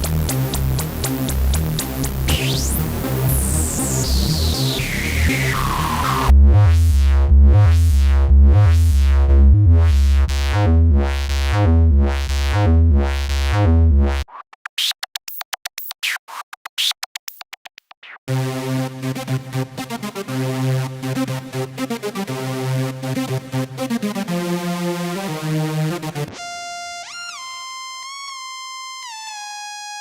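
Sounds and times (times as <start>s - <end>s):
pulsing synth bass: 0.0s - 14.3s
stuttering chopped synth sounds: 2.2s - 6.3s, 10.5s - 18.3s
synth pitch sweep: 2.2s - 6.9s.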